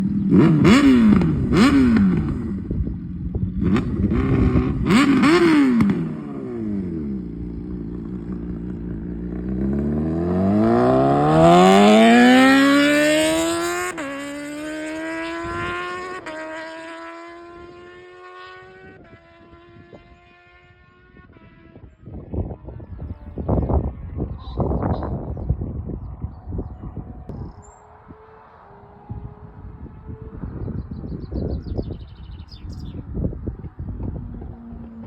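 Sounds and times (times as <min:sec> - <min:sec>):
motorcycle engine revving: 0:00.0 - 0:35.0.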